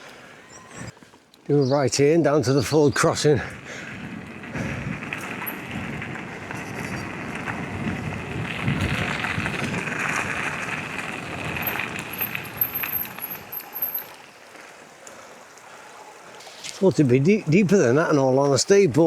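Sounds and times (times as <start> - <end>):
tyres on gravel: 0.0 - 19.0
wind on microphone: 3.5 - 13.6.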